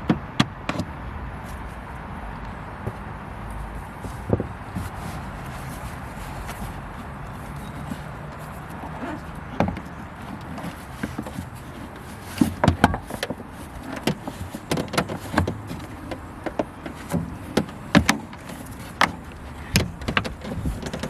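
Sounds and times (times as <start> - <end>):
plastic trim clicks and knocks: 19.0 - 21.0.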